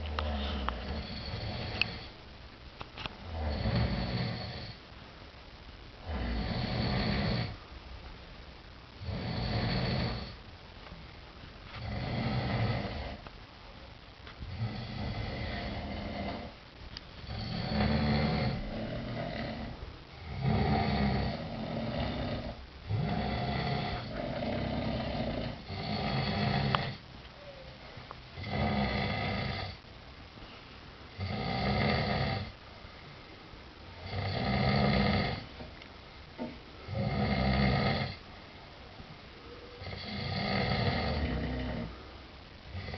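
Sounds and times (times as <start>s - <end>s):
quiet breaths: 0.0s - 42.9s
men snoring: 0.2s - 2.1s, 3.3s - 4.8s, 6.0s - 7.6s, 9.0s - 10.4s, 11.8s - 13.2s, 14.5s - 16.5s, 17.2s - 27.0s, 28.4s - 29.8s, 31.2s - 32.5s, 34.0s - 35.5s, 36.8s - 38.2s, 39.8s - 41.9s.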